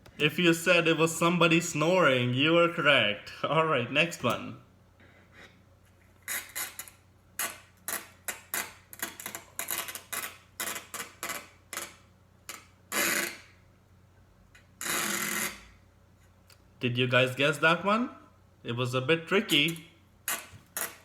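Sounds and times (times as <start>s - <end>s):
sticky tape pulled off roll: 6.2s - 13.5s.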